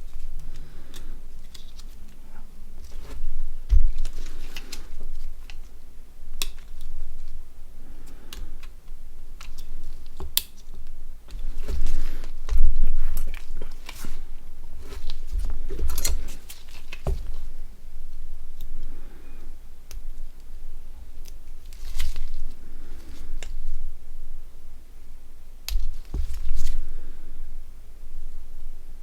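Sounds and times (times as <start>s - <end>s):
dull bumps on work surface: 17.0s - 17.5s.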